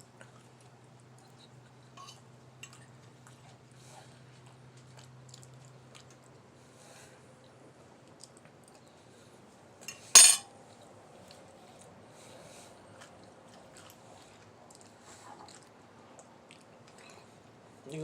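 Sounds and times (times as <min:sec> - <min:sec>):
cutlery clinking against dishes: 0:09.9 - 0:10.5
loud ringing clank: 0:10.2 - 0:10.4.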